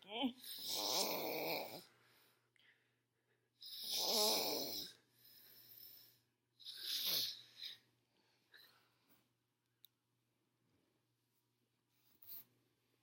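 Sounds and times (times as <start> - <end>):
woman snoring: 0.3 - 1.9, 3.6 - 5.0
quiet breathing: 1.6 - 3.8, 4.7 - 9.4.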